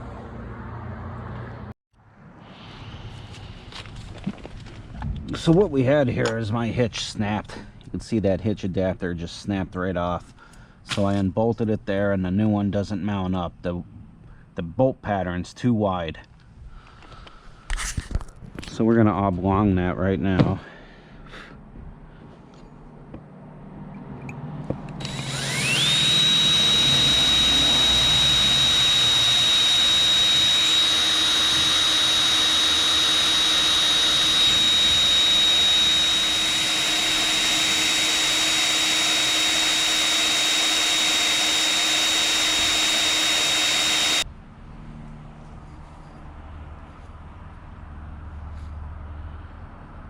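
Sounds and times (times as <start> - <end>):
electric drill drilling into steel: 25.0 - 44.2.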